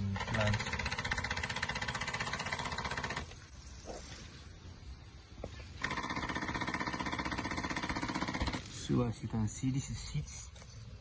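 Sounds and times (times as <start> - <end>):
small tractor motor rattling: 0.0 - 3.4, 5.8 - 9.0.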